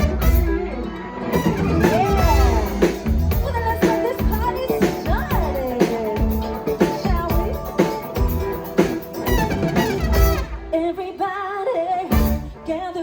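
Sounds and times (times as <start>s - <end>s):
latin pop band playing: 0.0s - 13.0s
drums hitting: 1.4s - 10.7s
person singing with vibrato: 1.6s - 8.7s.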